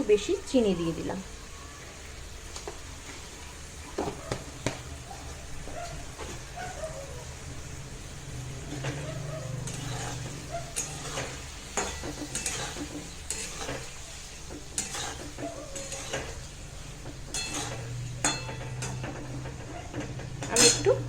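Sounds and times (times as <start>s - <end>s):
food sizzling in oil: 0.0s - 21.0s
spatula scraping a pan: 8.2s - 21.0s.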